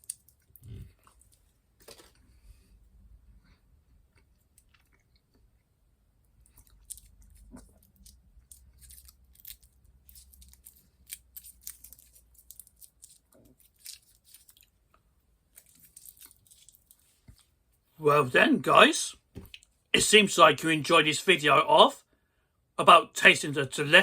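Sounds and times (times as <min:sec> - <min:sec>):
person chewing food: 0:00.0 - 0:02.6, 0:04.1 - 0:05.7, 0:06.3 - 0:17.6.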